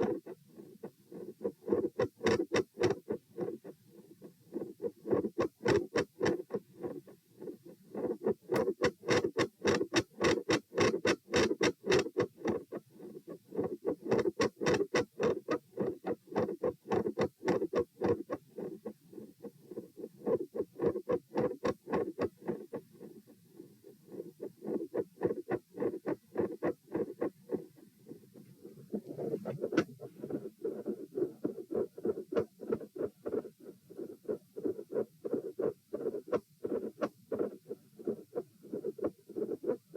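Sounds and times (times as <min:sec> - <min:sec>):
heartbeat through stethoscope: 0:24.1 - 0:27.7, 0:28.9 - 0:39.9.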